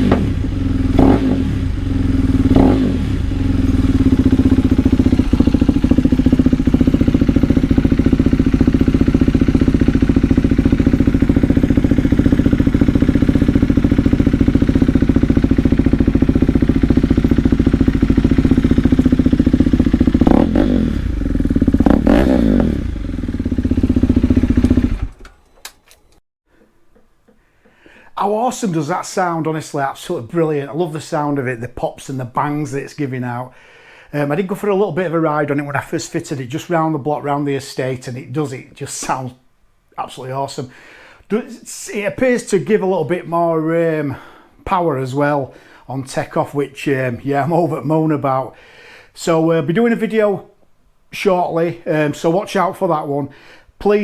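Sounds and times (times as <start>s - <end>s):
motorcycle engine idling: 0.0s - 25.3s.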